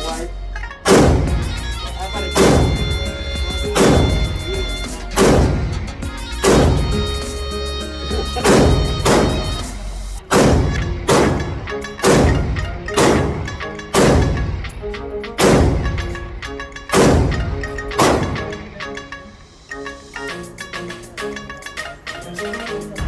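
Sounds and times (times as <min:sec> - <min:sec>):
gunshots: 0:00.9 - 0:07.4, 0:08.4 - 0:18.8.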